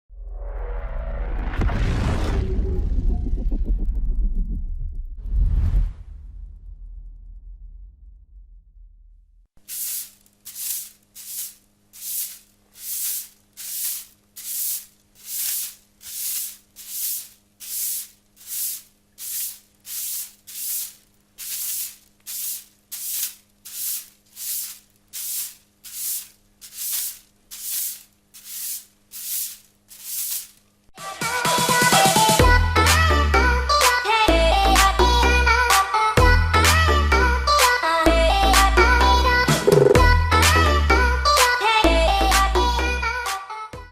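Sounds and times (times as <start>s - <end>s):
broom sweeping concrete: 9.6s - 30.7s.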